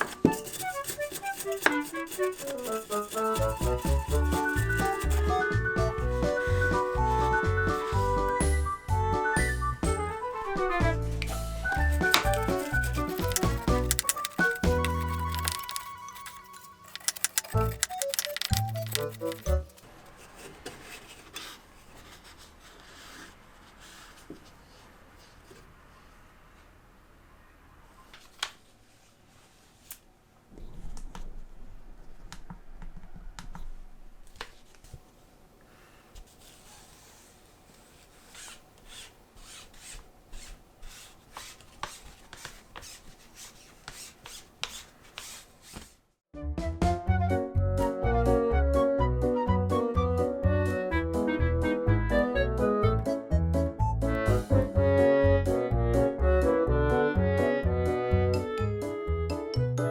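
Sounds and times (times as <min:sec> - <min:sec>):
hand scrubbing: 0:00.0 - 0:05.4, 0:11.6 - 0:19.9
hands rubbing and scraping: 0:00.0 - 0:08.2, 0:11.0 - 0:24.3, 0:36.2 - 0:46.0.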